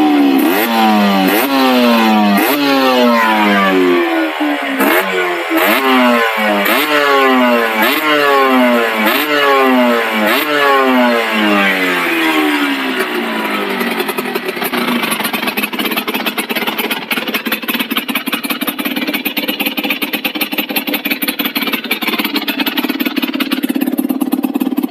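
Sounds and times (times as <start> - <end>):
two-stroke engine revving: 0.0 - 24.9
engine crackly idle: 12.9 - 24.9.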